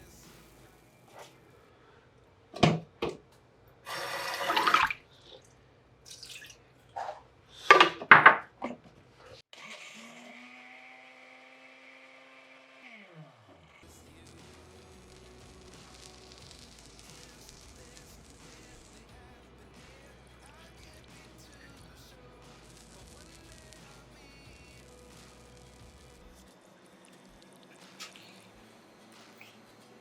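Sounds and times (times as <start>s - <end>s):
running water splashing: 3.9s - 5.5s, 6.1s - 7.8s, 22.4s - 29.7s
kitchen knocks and clacks: 7.7s - 8.9s
small motor humming: 9.6s - 13.4s.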